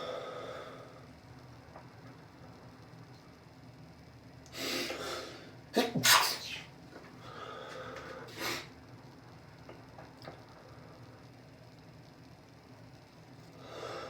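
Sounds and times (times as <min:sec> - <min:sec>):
person sneezing: 0:05.8 - 0:06.7.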